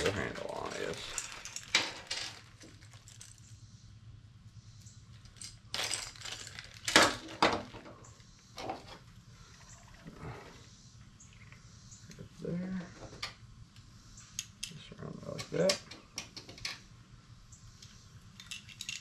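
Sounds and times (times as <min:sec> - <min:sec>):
small hard parts clicking and knocking: 0:00.0 - 0:03.6, 0:05.1 - 0:08.0, 0:17.8 - 0:19.0.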